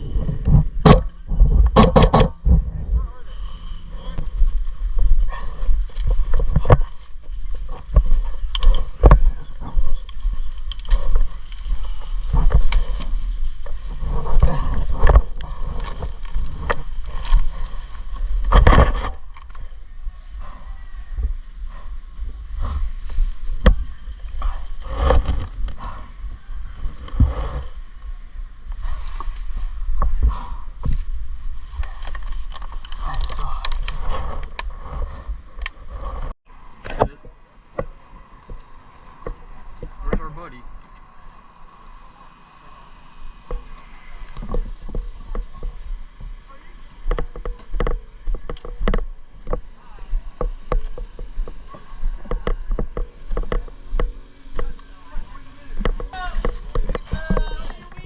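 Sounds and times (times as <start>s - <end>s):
low rumble of wind: 0.0s - 58.0s
sharp clicks and knocks: 0.4s - 2.6s.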